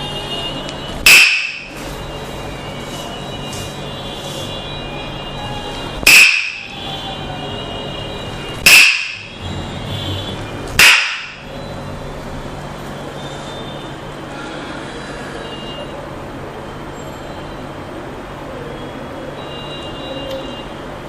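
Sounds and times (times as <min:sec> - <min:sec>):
wooden mallet knocking on stick: 0:10.8 - 0:11.4.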